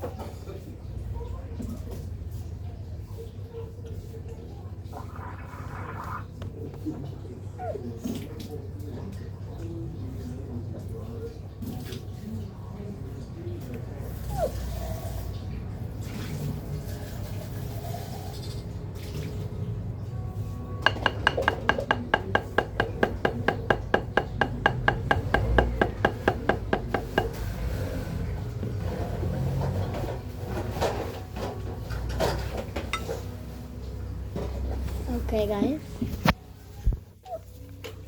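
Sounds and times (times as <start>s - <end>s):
batter stirring: 20.8s - 27.4s
utensil knocking against bowl: 20.8s - 27.4s.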